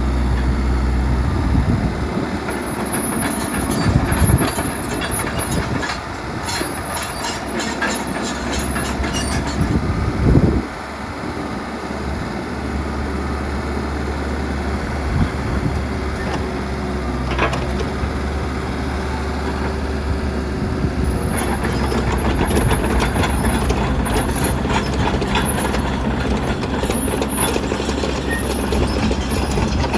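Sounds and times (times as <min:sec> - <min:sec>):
excavator diesel engine humming: 0:00.0 - 0:29.9.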